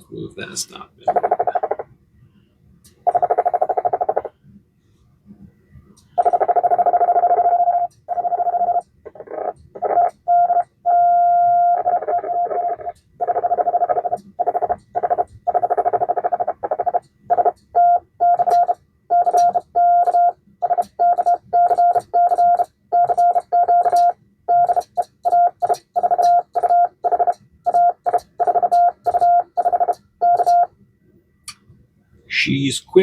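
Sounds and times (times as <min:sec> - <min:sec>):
morse code beeps: 0:06.2 - 0:08.8, 0:09.8 - 0:30.7
telegraph key contacts clicking: 0:18.3 - 0:30.7.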